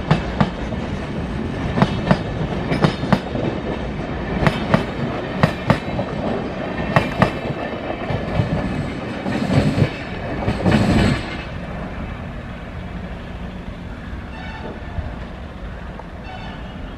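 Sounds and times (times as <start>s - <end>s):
train wheels clacking over rail joints: 0.0s - 11.7s
train rolling rumble: 0.0s - 16.9s.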